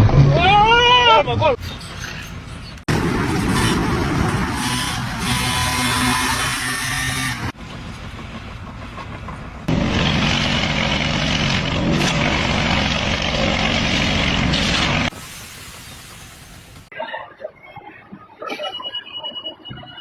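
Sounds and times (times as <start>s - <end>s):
heavy machinery running: 2.4s - 15.1s.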